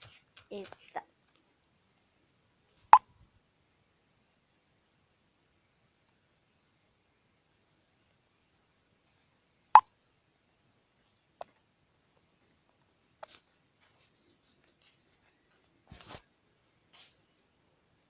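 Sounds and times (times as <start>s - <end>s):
faint clicks and rustles: 0.0s - 2.9s, 11.0s - 17.5s.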